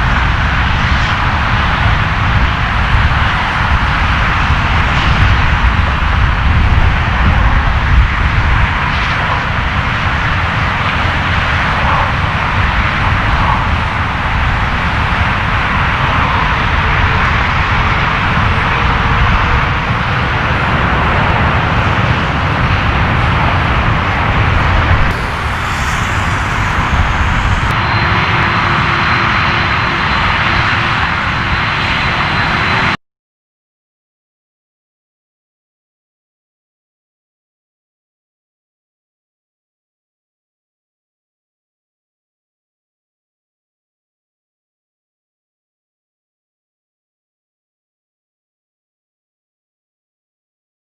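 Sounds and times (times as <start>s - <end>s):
jet engines roaring: 0.0s - 33.0s.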